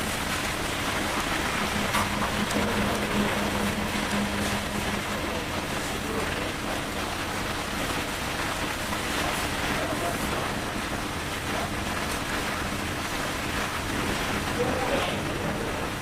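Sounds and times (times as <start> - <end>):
steady rushing noise: 0.0 - 16.0
faint voices: 14.5 - 16.0.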